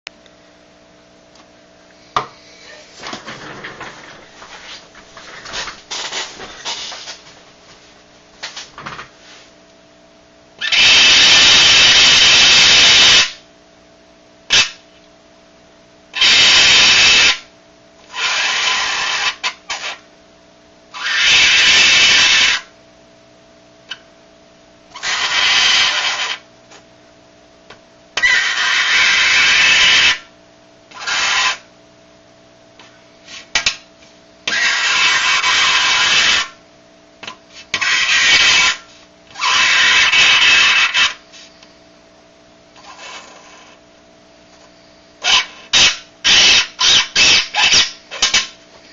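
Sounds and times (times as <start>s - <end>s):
coin squealing on dry ice: 10.6s - 13.4s, 14.5s - 14.8s, 16.2s - 17.4s, 18.1s - 20.0s, 20.9s - 22.7s, 24.9s - 26.4s, 28.2s - 30.3s, 30.9s - 31.7s, 34.5s - 36.6s, 37.7s - 41.2s, 42.8s - 43.8s, 45.2s - 48.5s.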